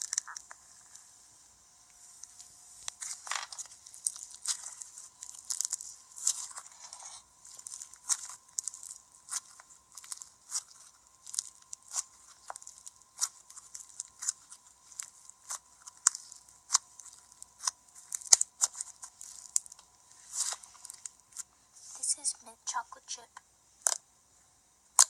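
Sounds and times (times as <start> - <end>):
faint steady hum: 0.0 - 25.0
slime crackling and clicking: 7.5 - 21.4, 23.8 - 24.0.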